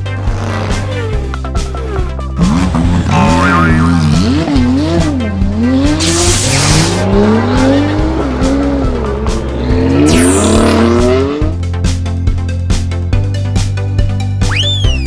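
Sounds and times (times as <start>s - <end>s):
background music with bass: 0.0s - 15.0s
race car engine revving: 0.2s - 11.7s
tire screeches: 0.4s - 11.5s.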